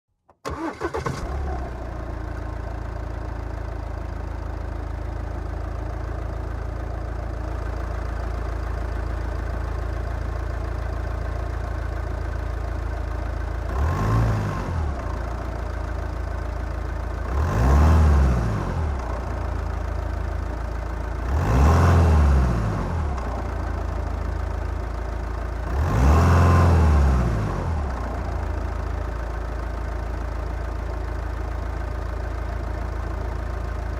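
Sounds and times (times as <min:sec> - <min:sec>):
diesel engine starting and idling: 0:00.3 - 0:33.9
engine revving: 0:13.7 - 0:15.2, 0:17.2 - 0:19.2, 0:21.2 - 0:24.3, 0:25.6 - 0:29.3.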